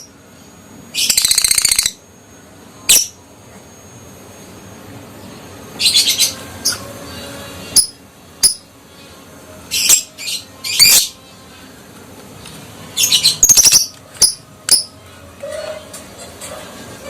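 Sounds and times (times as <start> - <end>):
lovebird chirping calls: 0.9 - 2.0, 5.8 - 8.6, 9.7 - 11.2, 13.0 - 14.9.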